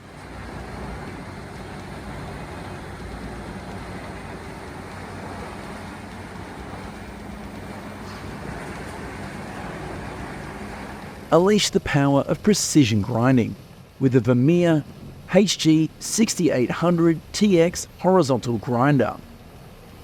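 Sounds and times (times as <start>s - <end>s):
diesel engine running under load: 0.0s - 12.0s.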